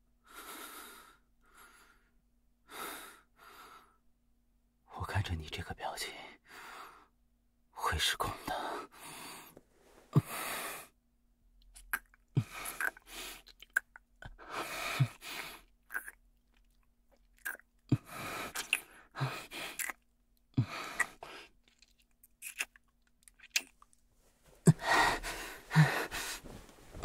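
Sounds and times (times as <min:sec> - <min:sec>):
mouth clicks: 0:11.8 - 0:14.0
short breaths: 0:24.6 - 0:26.7.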